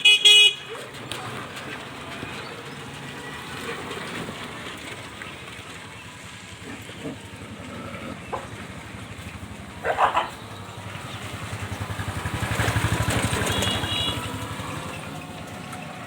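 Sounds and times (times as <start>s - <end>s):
street traffic: 0.0s - 16.0s
engine running: 0.7s - 16.0s.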